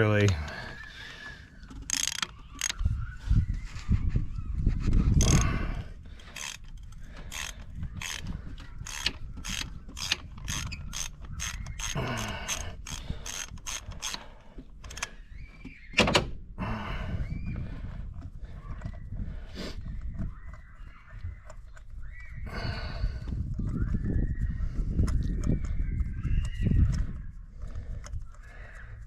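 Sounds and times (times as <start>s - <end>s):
ratchet wrench clicking: 1.8s - 2.8s, 5.2s - 5.5s, 6.3s - 14.3s.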